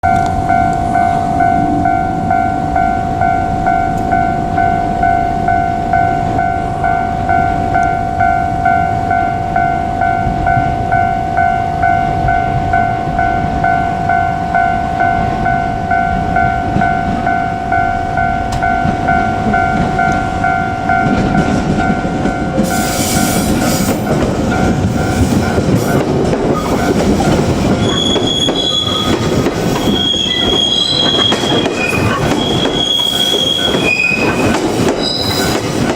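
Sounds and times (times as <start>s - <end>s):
electric train rumbling: 0.0s - 35.9s
level crossing bell clanging: 0.0s - 35.9s
train wheels squealing: 25.0s - 35.9s.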